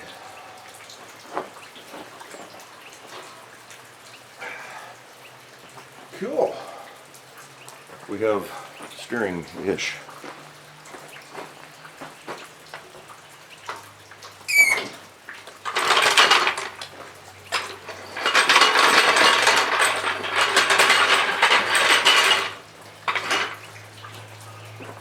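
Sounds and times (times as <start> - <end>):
short squeak: 14.5 - 15.0
metal tools clattering: 14.5 - 23.8.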